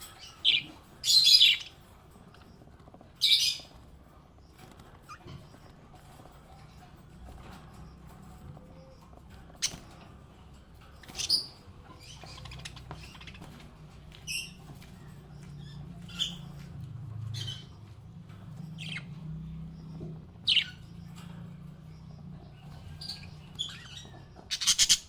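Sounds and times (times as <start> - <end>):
parrots chirping and squawking: 0.0 - 25.0.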